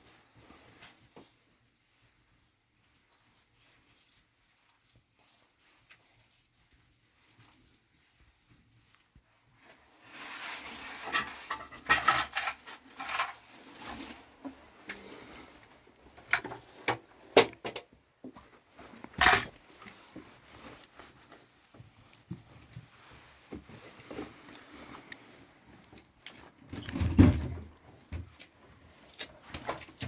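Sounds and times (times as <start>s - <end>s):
rustling scrape: 0.0s - 17.4s, 18.4s - 30.0s
pots and utensils clattering: 10.8s - 14.2s, 19.2s - 19.6s.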